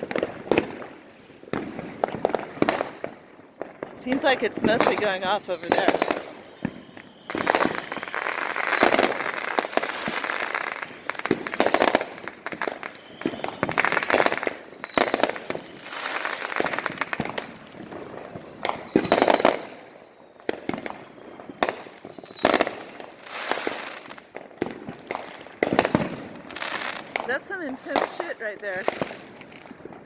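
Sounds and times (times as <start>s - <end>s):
fireworks crackling and banging: 0.0s - 30.0s
falling firework whistle: 4.1s - 30.0s.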